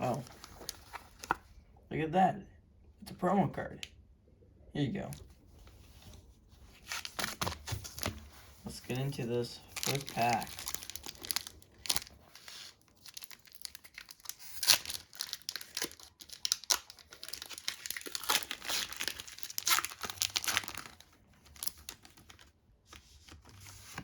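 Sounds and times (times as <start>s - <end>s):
foil wrapper ripping and crinkling: 9.6s - 22.4s.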